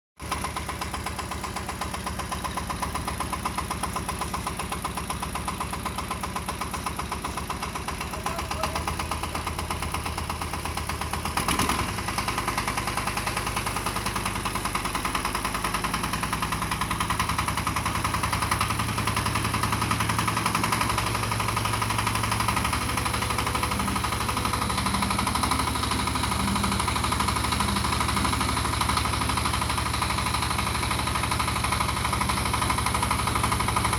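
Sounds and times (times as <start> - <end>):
tractor engine chugging: 0.2 - 33.9.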